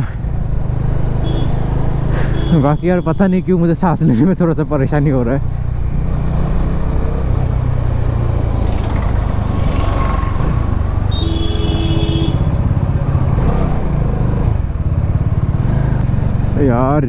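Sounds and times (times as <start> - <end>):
motorcycle engine running: 4.8 - 17.0.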